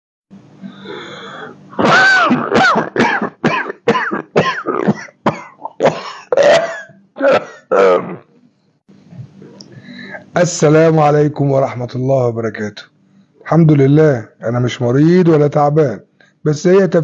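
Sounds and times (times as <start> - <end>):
man coughing: 1.8 - 8.2
man clearing his throat: 1.8 - 8.3.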